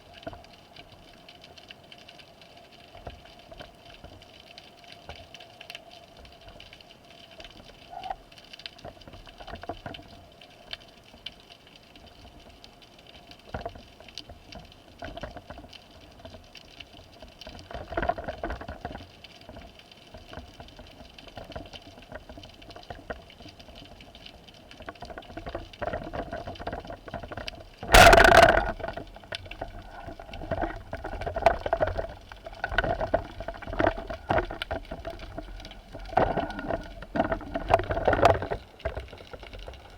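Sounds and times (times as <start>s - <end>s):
faint underwater clicks: 0.0s - 39.9s
underwater water noise: 0.0s - 39.9s.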